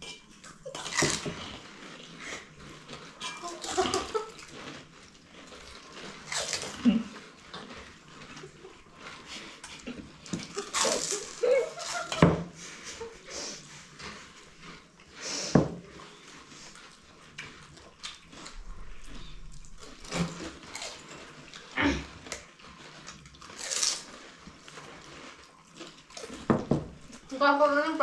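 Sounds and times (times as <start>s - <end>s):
crisp shells crunching: 0.6s - 12.2s, 16.9s - 27.3s.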